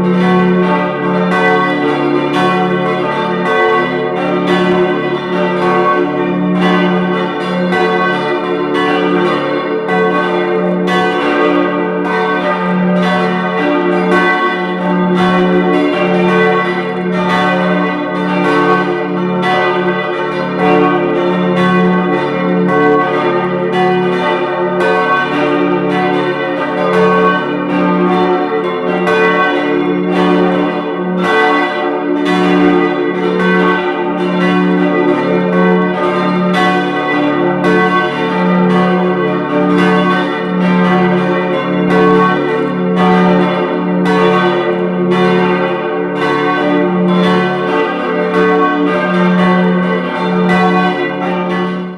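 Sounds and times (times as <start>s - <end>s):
church bells pealing: 0.0s - 51.9s.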